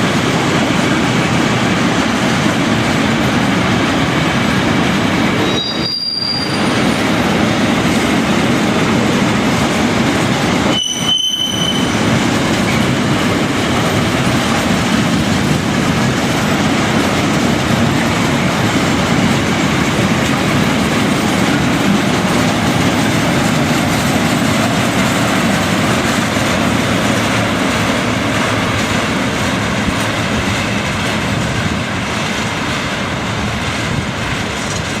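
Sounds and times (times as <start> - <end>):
freight train rumbling past: 0.0 - 35.0
high-pitched wheel squeals: 5.4 - 6.8, 10.7 - 12.1.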